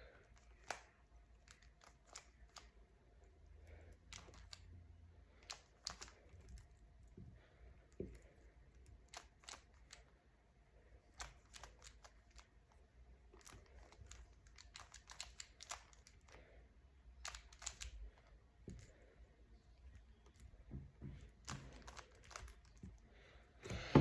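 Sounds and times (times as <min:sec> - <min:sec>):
plastic puzzle cube clicking: 0:00.3 - 0:02.8, 0:04.1 - 0:04.7, 0:05.4 - 0:06.4, 0:09.1 - 0:10.0, 0:11.1 - 0:12.5, 0:13.4 - 0:16.4, 0:17.2 - 0:18.9, 0:21.4 - 0:22.9.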